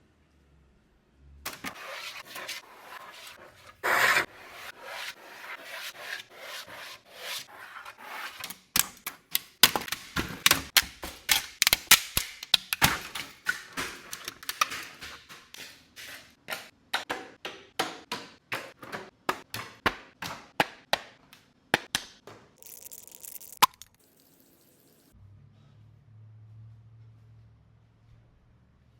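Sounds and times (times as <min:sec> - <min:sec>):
plastic parts rubbing and scraping: 0:01.5 - 0:16.4
plastic parts clicking: 0:08.4 - 0:15.6.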